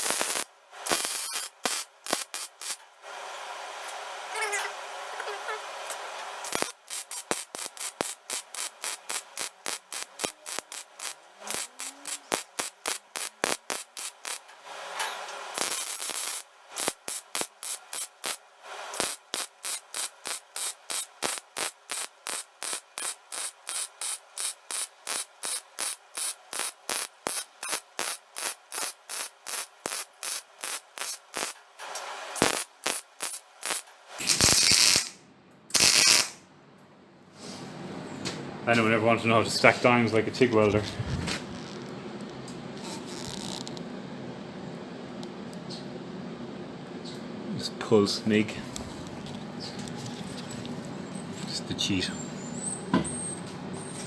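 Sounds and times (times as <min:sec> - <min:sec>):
welding arc crackling: 0:00.0 - 0:02.8, 0:04.4 - 0:36.4, 0:40.2 - 0:41.9, 0:42.8 - 0:43.8.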